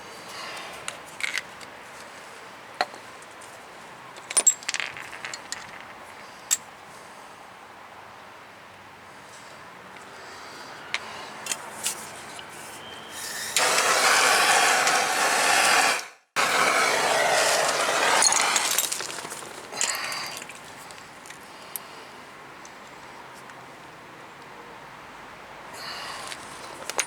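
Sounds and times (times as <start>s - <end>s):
torch flame hissing: 13.2s - 18.9s.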